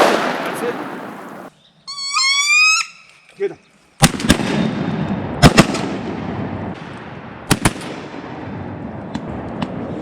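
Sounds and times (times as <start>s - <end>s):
shotgun shots with echo: 0.0s - 1.5s.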